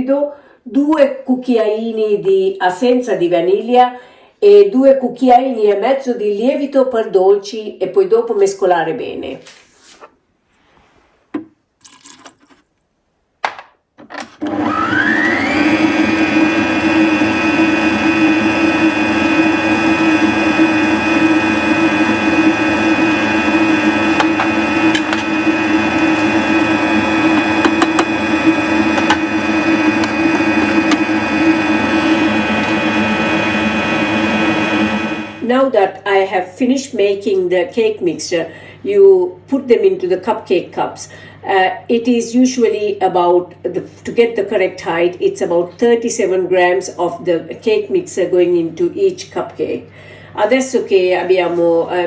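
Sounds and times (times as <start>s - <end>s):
electric mixer whining: 14.4s - 35.5s.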